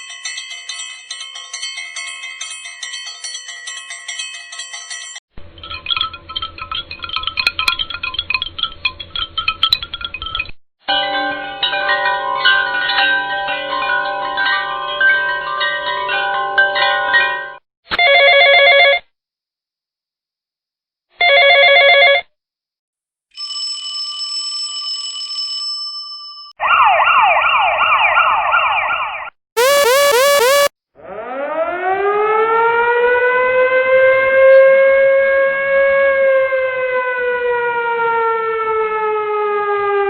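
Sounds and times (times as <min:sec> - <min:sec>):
fast-warbling siren: 0:26.6 - 0:32.4
electronic phone rings: 0:29.6 - 0:30.7
steady high electronic tone: 0:29.6 - 0:30.7.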